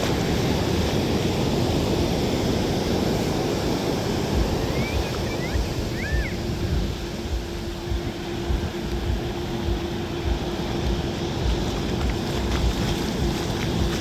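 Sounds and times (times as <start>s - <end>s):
ocean surf washing onto beach: 0.0s - 14.0s
steady low hum: 0.0s - 14.0s
wind buffeting the microphone: 0.0s - 14.0s.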